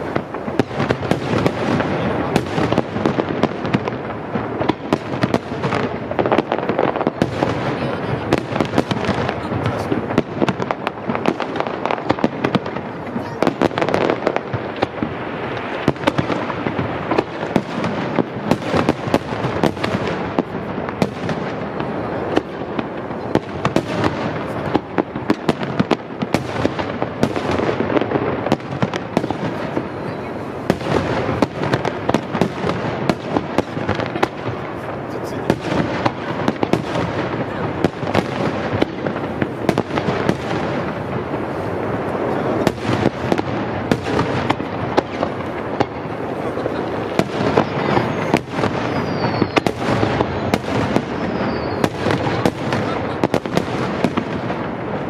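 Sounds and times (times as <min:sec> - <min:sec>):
fireworks bursting with crackle: 0:00.0 - 0:55.0.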